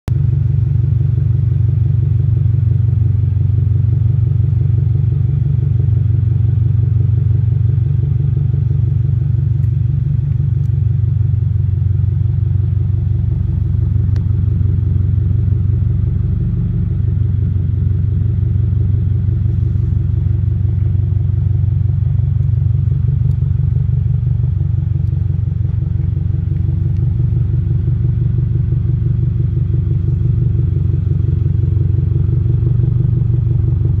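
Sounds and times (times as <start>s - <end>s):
car exhaust rumble idling: 0.1s - 34.0s.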